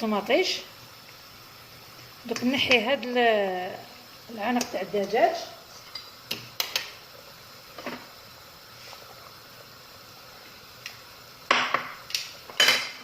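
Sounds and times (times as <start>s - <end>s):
faint steady hiss: 0.0s - 13.0s
utensils clattering against pot: 12.5s - 13.0s.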